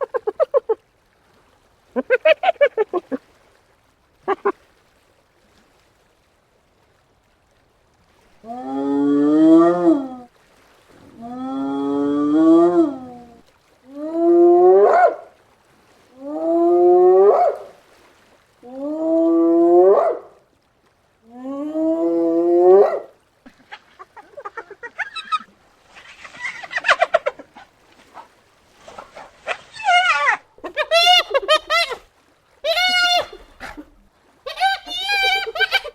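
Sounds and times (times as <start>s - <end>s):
hyena whooping: 22.5s - 33.9s, 34.5s - 35.9s
hyena rapid broken calls: 23.5s - 32.0s, 34.5s - 35.9s.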